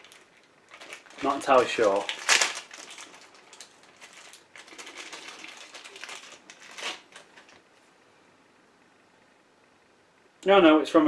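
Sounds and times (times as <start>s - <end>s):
plastic packaging crinkling: 0.0s - 7.7s.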